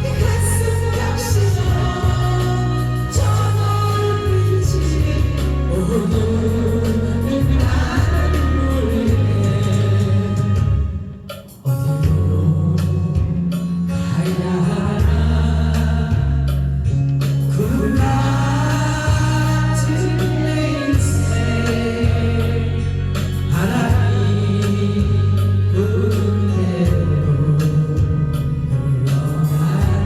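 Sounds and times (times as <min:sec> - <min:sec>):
group singing over backing track: 0:00.0 - 0:30.0
steady bass line: 0:00.0 - 0:30.0.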